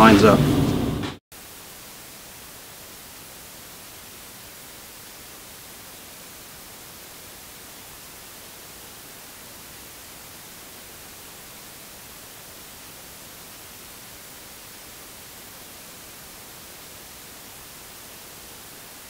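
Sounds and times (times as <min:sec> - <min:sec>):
steady background hiss: 0:00.0 - 0:19.0.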